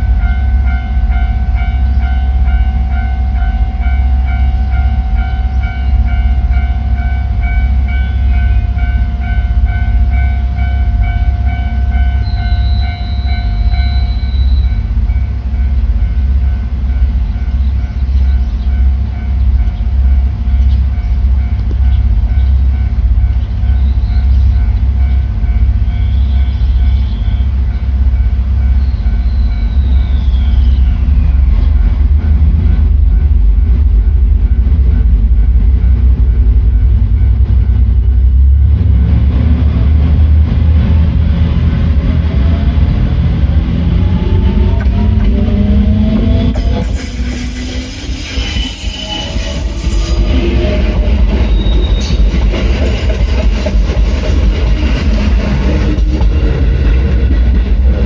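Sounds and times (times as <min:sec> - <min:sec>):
train wheels rumbling on rails: 0:00.0 - 0:58.0
rising whine: 0:25.4 - 0:58.0.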